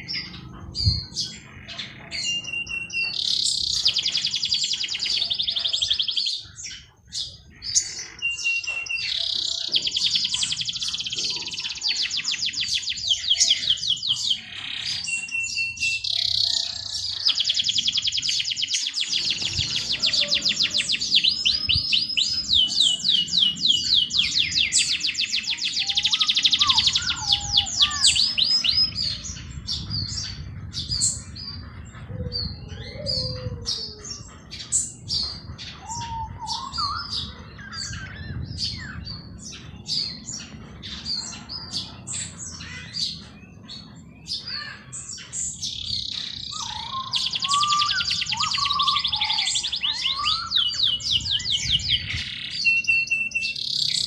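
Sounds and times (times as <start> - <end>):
songbirds trilling: 0.0 - 54.0
bird chirps and whistles: 2.2 - 6.2, 7.8 - 14.2, 23.7 - 29.2, 35.2 - 39.0, 46.1 - 54.0.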